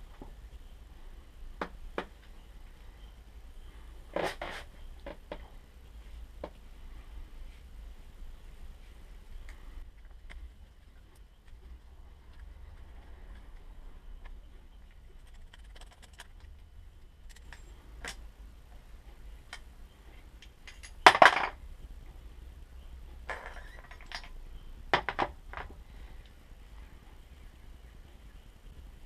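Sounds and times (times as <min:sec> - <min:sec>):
metal tools clinking: 0:20.6 - 0:21.6.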